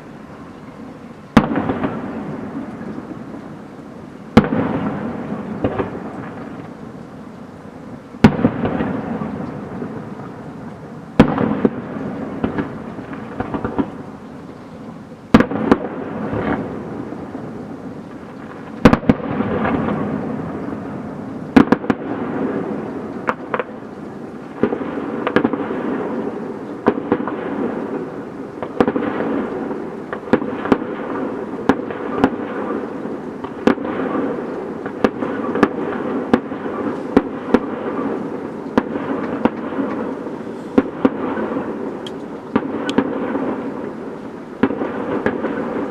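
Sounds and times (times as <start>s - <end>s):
fireworks crackling: 0.0s - 45.9s
firework shells banging: 34.8s - 43.7s.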